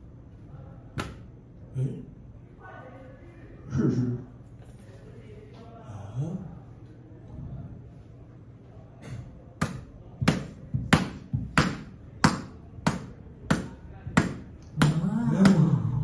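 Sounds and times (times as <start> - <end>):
low drawn-out vocal sound: 14.7 - 16.0.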